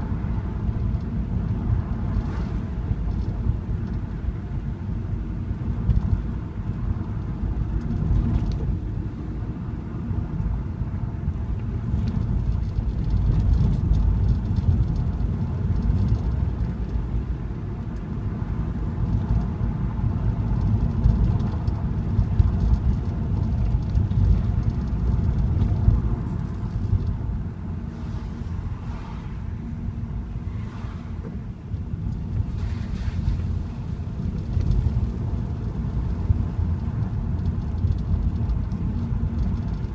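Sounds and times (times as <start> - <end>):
car engine and tyres rumbling: 0.0 - 39.9
light ticks: 35.7 - 39.9.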